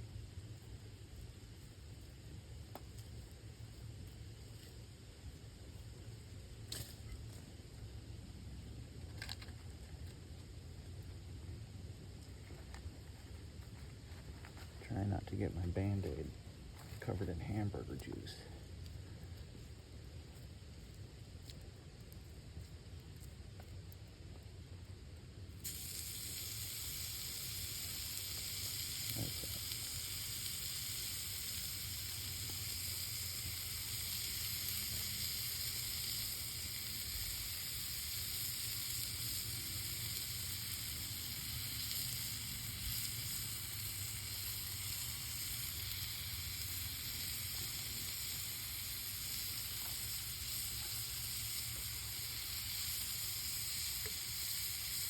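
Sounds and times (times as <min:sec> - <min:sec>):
meat sizzling in a pan: 0:25.6 - 0:55.0.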